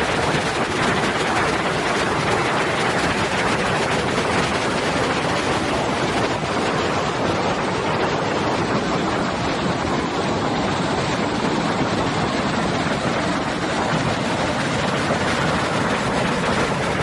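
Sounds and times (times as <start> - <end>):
river rushing through rapids: 0.0 - 17.0.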